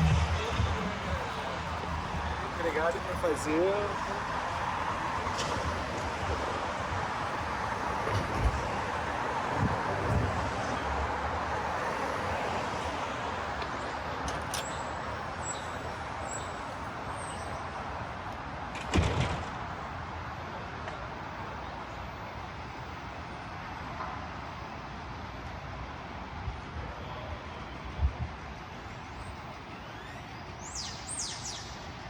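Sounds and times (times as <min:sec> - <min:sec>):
loud thump: 0:00.0 - 0:01.6
traffic noise: 0:00.0 - 0:32.0.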